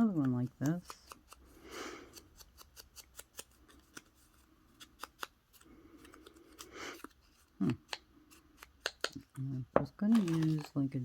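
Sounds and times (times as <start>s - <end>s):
light clicks of paper pieces: 8.6s - 11.0s
paper rustling: 9.9s - 11.0s.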